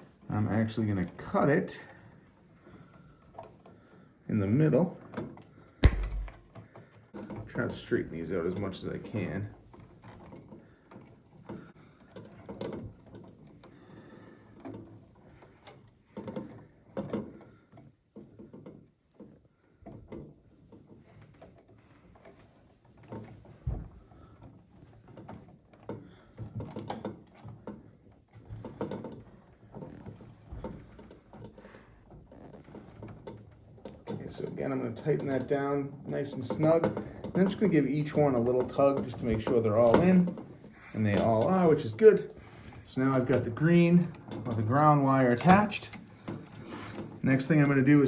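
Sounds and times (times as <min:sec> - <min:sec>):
low knock: 0:05.8 - 0:06.4.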